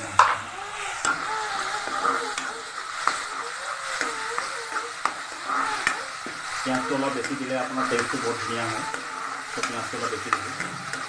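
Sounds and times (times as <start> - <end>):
vegetables sizzling in hot oil: 0.0 - 11.0.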